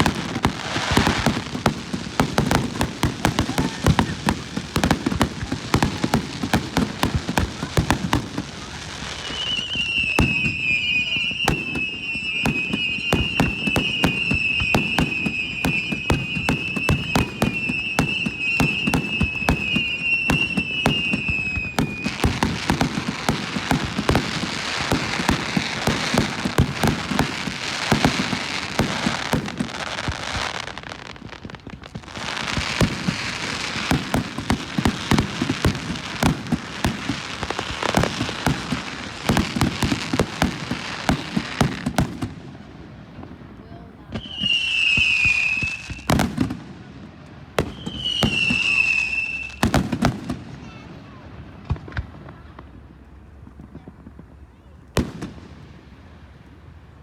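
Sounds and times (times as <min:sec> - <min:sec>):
fireworks bangs and crackling: 0:00.0 - 0:57.0.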